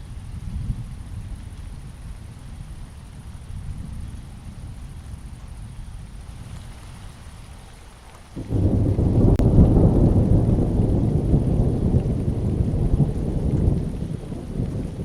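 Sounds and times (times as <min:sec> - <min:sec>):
steady rain: 0:00.0 - 0:15.0
thunder rumbling: 0:08.4 - 0:15.0.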